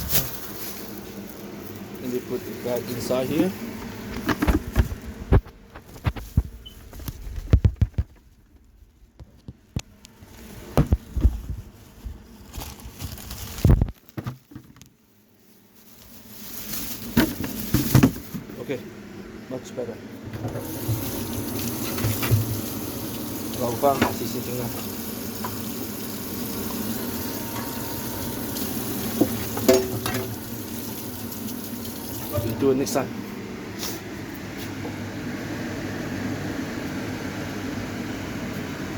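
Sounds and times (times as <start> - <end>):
food cooking hiss: 20.6 - 32.5
cookware and utensils clinking: 29.6 - 30.4.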